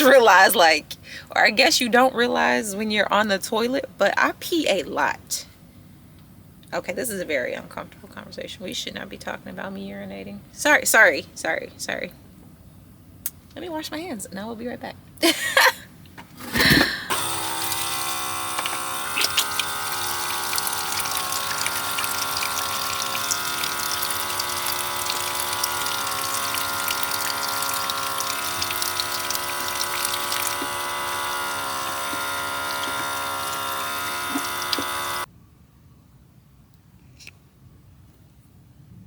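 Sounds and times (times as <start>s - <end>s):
electric water pump whining: 0.0s - 3.6s, 16.4s - 35.3s
tap water running: 16.6s - 35.3s.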